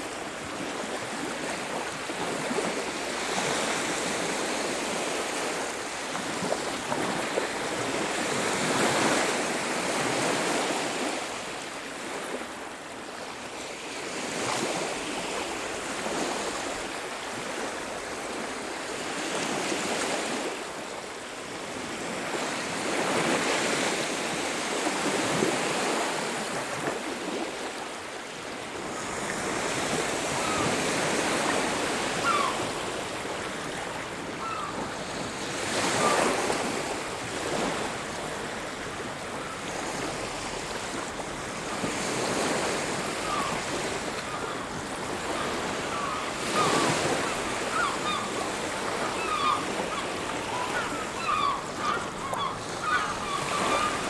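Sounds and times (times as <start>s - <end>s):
ocean waves breaking: 22.1s - 54.0s.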